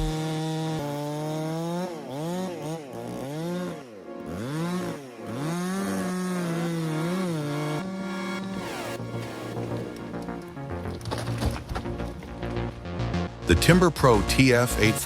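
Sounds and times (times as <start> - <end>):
chainsaw cutting wood: 0.0 - 12.7.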